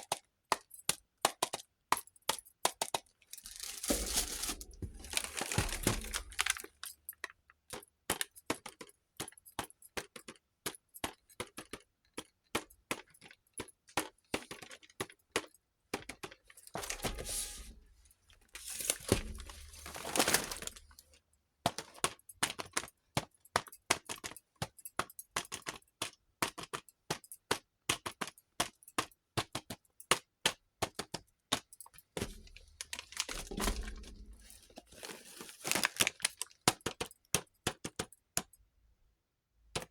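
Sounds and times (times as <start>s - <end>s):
packaging crinkling: 3.3s - 6.9s, 16.6s - 21.2s, 32.2s - 36.6s.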